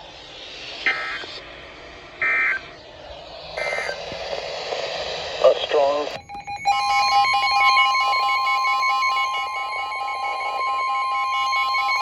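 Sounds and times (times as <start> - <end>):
two-tone alert tone: 6.2 - 12.0.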